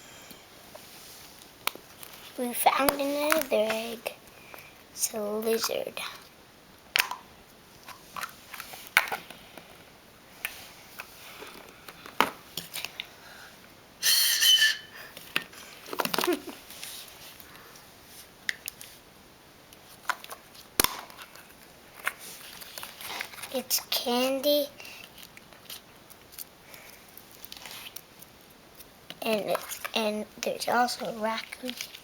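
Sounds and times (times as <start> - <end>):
plastic eggs clicking and rustling: 29.1 - 32.0.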